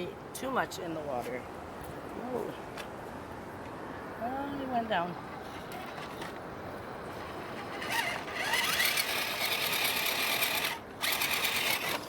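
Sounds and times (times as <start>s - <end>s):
electric motor whining: 7.1s - 12.0s.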